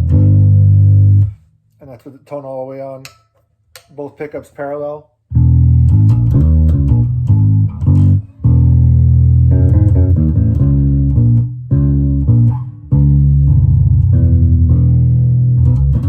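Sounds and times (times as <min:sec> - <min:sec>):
bass guitar plucked notes: 0:00.0 - 0:01.5, 0:05.3 - 0:16.0.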